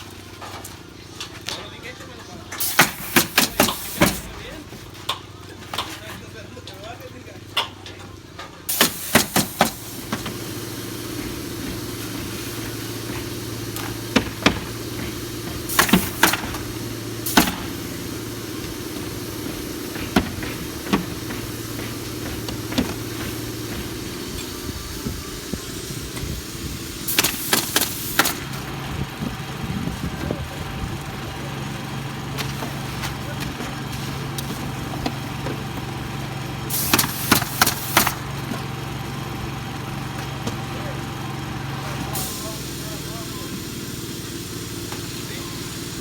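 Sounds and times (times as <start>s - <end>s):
pneumatic nail gun shots: 2.6s - 4.4s, 8.7s - 28.6s, 36.7s - 38.3s
steady motor hum: 8.7s - 46.0s.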